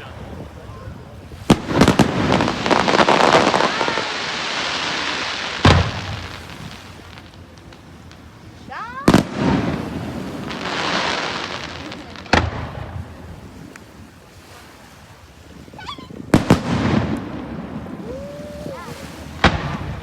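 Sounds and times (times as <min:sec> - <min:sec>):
firework crackling: 0:01.4 - 0:13.6, 0:16.3 - 0:20.0
rising firework whistle: 0:15.8 - 0:19.8.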